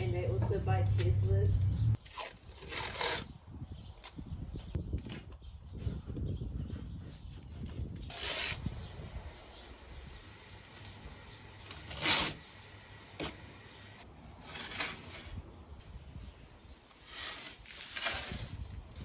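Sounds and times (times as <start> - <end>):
tape ripping: 2.0 - 3.4, 11.6 - 12.5.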